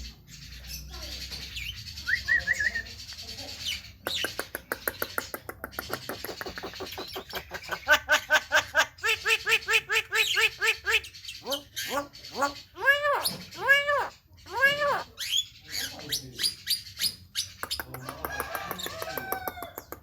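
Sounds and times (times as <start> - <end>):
bird whistling and chattering: 0.6 - 18.1
bird clicks and harsh notes: 3.1 - 7.7.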